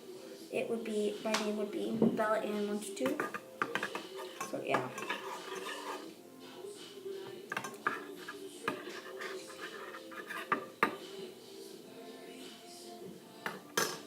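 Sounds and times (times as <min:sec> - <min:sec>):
utensil stirring mixture in bowl: 0:02.5 - 0:11.1
utensil clinking against bowl: 0:03.0 - 0:06.0, 0:07.5 - 0:11.0, 0:13.4 - 0:14.0.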